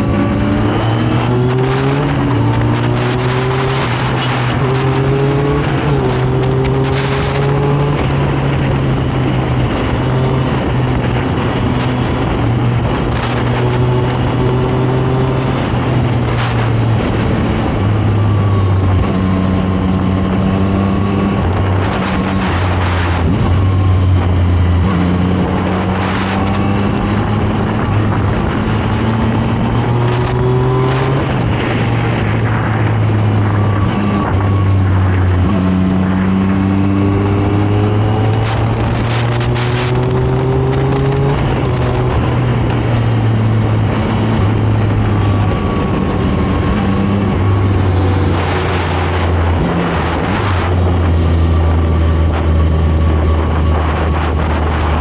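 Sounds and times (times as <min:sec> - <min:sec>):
motorcycle engine revving: 0:00.0 - 0:55.0.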